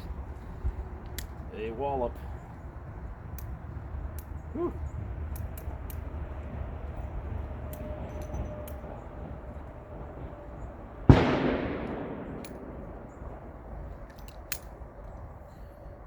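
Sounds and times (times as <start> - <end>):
faint clicks: 0.0 - 15.8
revolver shot with echo: 11.1 - 14.0.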